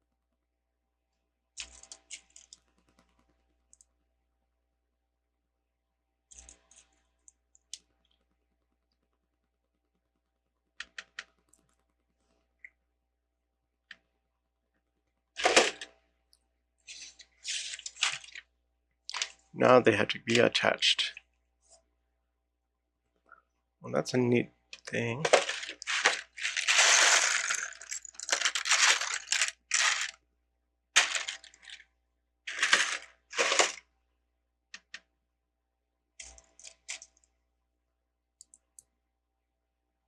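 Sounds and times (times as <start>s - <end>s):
plastic bricks clicking and clattering: 15.4s - 15.9s, 19.1s - 19.4s, 24.8s - 30.2s, 31.0s - 31.8s, 32.5s - 33.8s.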